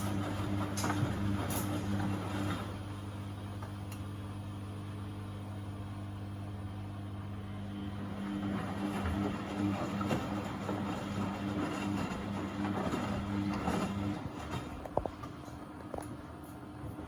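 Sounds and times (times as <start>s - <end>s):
water sloshing in washing machine: 0.0s - 2.9s, 7.8s - 17.0s
washing machine hum: 0.0s - 17.0s.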